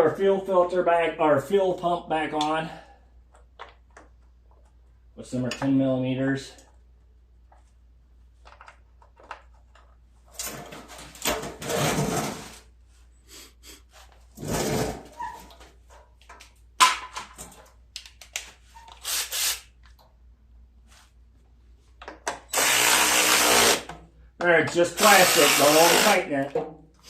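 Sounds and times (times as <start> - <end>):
tools and parts knocking: 22.0 - 22.5.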